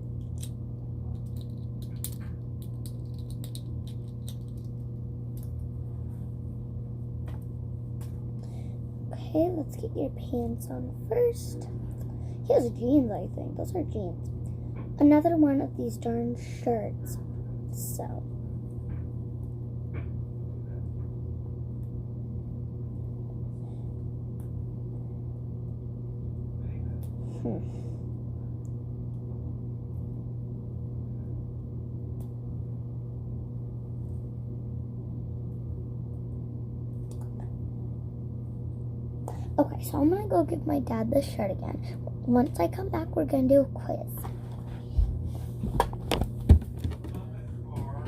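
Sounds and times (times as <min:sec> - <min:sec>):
steady low hum: 0:00.0 - 0:48.0
small plastic parts clicking: 0:01.1 - 0:04.7.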